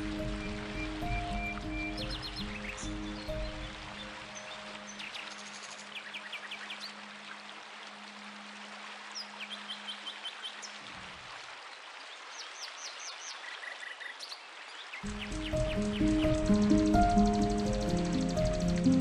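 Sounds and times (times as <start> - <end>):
high chirping calls: 0.0 - 7.0, 15.0 - 19.0
running water hiss: 0.0 - 19.0.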